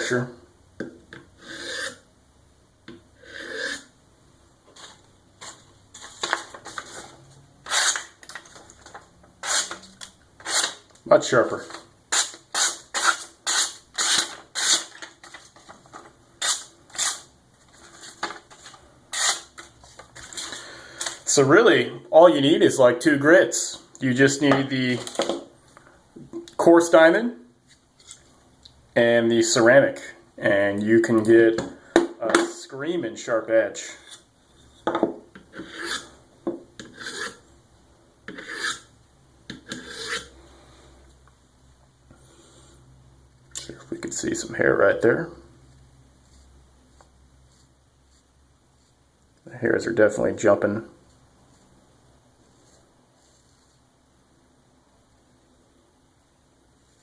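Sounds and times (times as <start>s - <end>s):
blade drawn across ceramic hone: 1.4s - 2.0s, 3.2s - 3.9s, 35.5s - 36.1s, 36.8s - 37.4s, 38.3s - 38.9s, 39.7s - 40.3s
blade scraping on ceramic sharpener: 1.4s - 2.0s, 3.2s - 3.9s, 7.7s - 8.1s, 9.4s - 9.8s, 12.2s - 14.9s, 35.4s - 36.1s, 36.8s - 37.4s, 38.3s - 38.9s, 39.5s - 40.3s.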